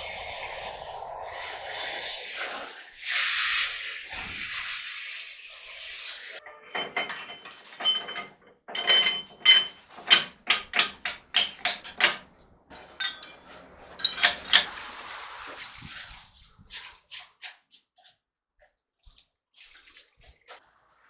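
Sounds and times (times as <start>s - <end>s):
steady hiss: 0.0s - 6.4s.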